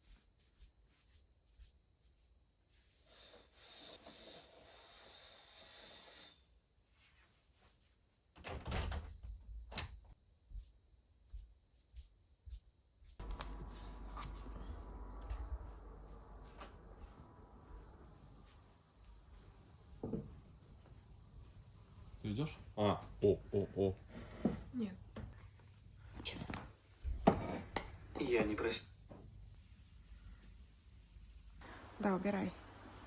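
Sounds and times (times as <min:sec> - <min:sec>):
low rumble: 0:13.2 - 0:18.1.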